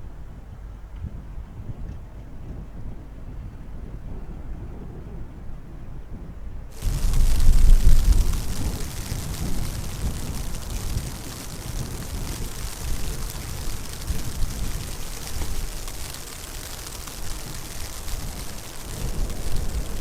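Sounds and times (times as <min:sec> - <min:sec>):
strong wind gusting: 0:06.8 - 0:20.0
wind buffeting microphone: 0:06.8 - 0:20.0.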